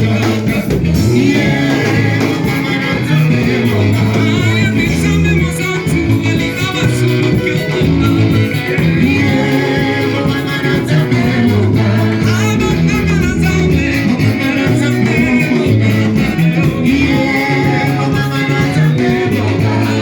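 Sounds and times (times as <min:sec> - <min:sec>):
band with guitar and bass: 0:00.0 - 0:20.0
person singing: 0:00.0 - 0:20.0.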